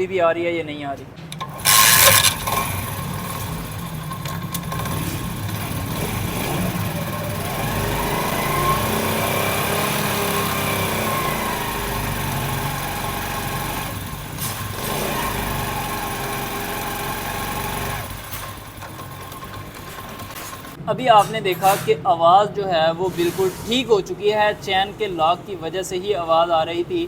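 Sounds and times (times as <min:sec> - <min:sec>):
motorcycle engine running: 0:01.5 - 0:20.8.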